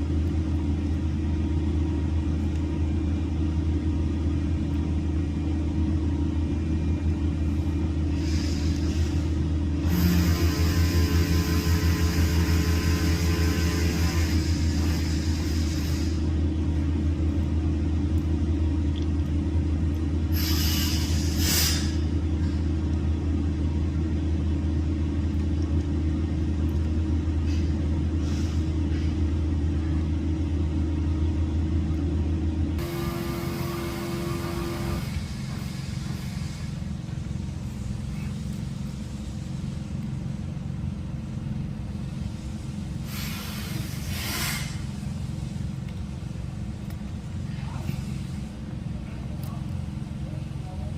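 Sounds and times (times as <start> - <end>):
engine low rumble: 0.0 - 50.9
short hiss: 8.2 - 9.3, 14.2 - 16.3, 20.3 - 22.1, 43.0 - 45.0
high hiss: 20.3 - 22.1, 42.1 - 45.6.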